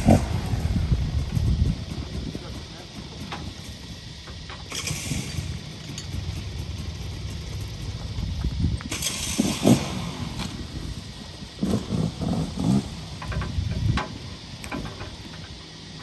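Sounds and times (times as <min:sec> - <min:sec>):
burst of rushing noise: 0:00.0 - 0:03.2
off-road engine running: 0:00.0 - 0:16.0.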